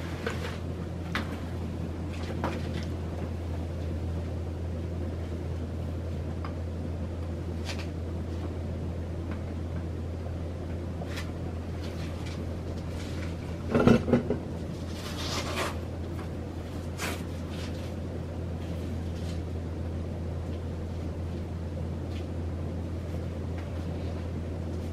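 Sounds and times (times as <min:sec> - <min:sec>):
ceiling fan humming: 0:00.0 - 0:24.9
knocking clatter: 0:13.7 - 0:14.4.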